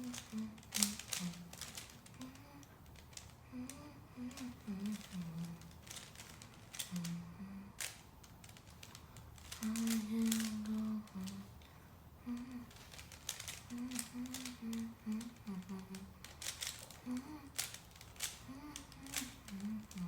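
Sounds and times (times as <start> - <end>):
person humming: 0.0 - 2.7, 3.5 - 5.9, 6.8 - 7.9, 9.5 - 11.6, 12.2 - 20.0
puzzle cube clicking: 0.0 - 7.2, 7.8 - 11.6, 12.3 - 20.0.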